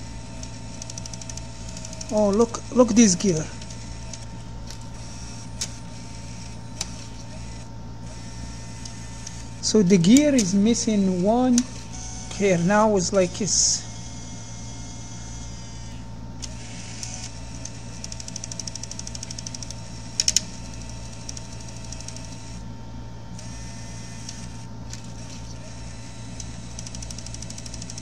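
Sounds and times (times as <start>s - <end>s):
cd changer gear clicking: 8.8s - 12.8s, 16.4s - 22.4s, 26.3s - 28.0s.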